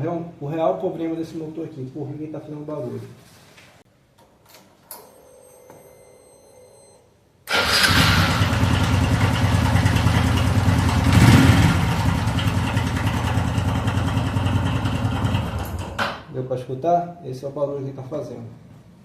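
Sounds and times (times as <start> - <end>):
motorcycle engine running: 7.6 - 16.0.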